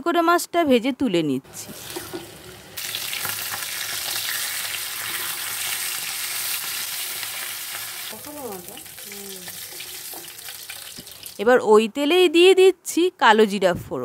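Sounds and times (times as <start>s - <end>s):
fish frying in oil: 1.6s - 11.4s.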